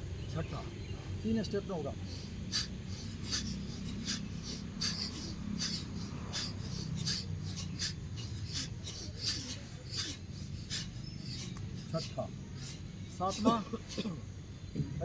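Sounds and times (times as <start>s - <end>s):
forceful nasal breaths: 1.8s - 14.8s.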